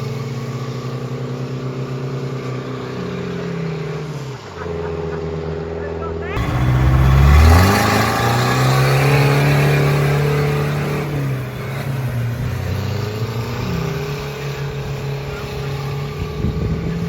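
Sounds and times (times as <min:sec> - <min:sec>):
engine running at high revs: 0:00.0 - 0:17.0
second engine note rising: 0:06.4 - 0:12.8.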